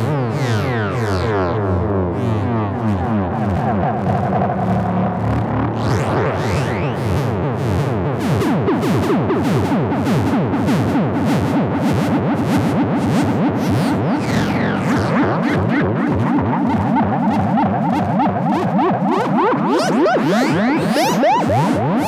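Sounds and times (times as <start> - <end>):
rapid even synth pulsing: 13.3 - 22.0
synthesizer gliding pitches: 13.5 - 22.0.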